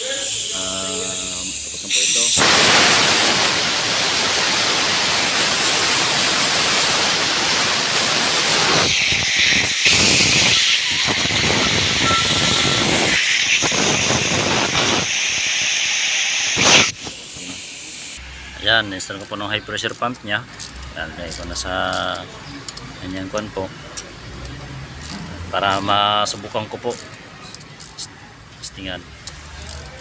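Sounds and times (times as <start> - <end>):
compressed air hissing from blowgun: 0.0 - 18.3.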